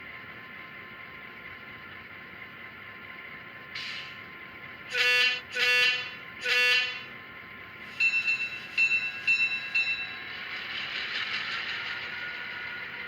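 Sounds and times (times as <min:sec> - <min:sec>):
locomotive horn: 0:04.9 - 0:07.1
locomotive bell strikes: 0:07.9 - 0:10.5.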